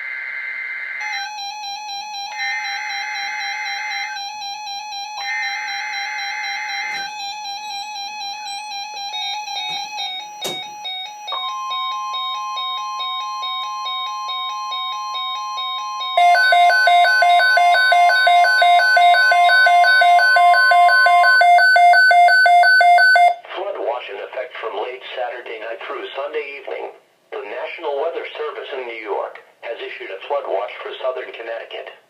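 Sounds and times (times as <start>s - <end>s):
steady single-pitch alarm tone: 0.0s - 23.4s
electronic stepping beeps: 1.1s - 23.4s.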